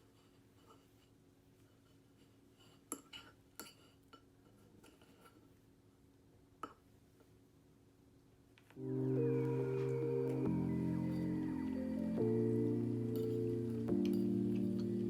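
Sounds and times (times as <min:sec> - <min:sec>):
faint steady hum: 0:03.8 - 0:15.0.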